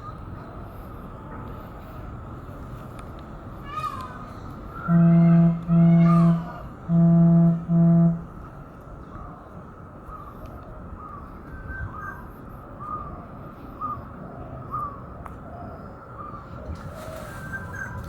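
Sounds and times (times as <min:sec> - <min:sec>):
loud low honks: 0:04.9 - 0:08.5.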